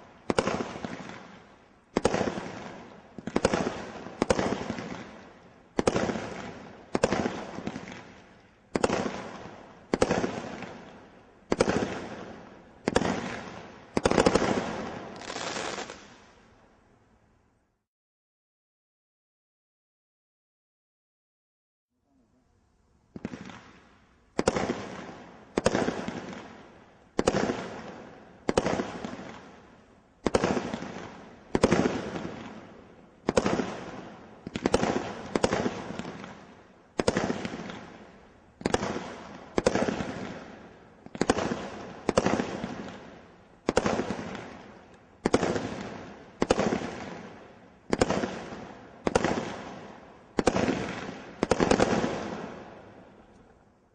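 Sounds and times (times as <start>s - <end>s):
firework hiss: 14.2s - 16.2s.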